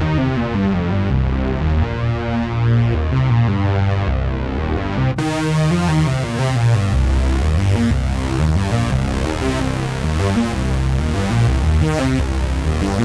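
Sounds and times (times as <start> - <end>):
synth bass line: 5.2 - 13.0
synthesizer pad chords: 5.2 - 13.0.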